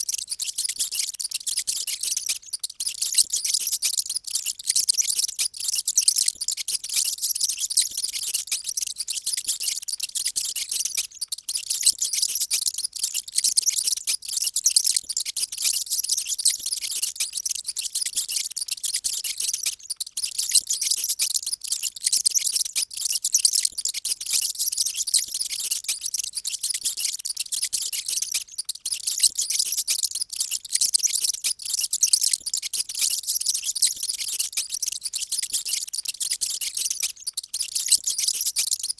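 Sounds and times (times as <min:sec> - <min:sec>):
mice squeaking: 0:00.0 - 0:38.9.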